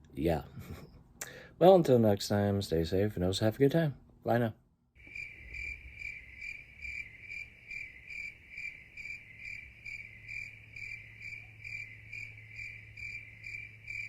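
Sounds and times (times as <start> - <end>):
faint low hum: 0.0 - 14.0
cricket chirping: 5.0 - 14.0.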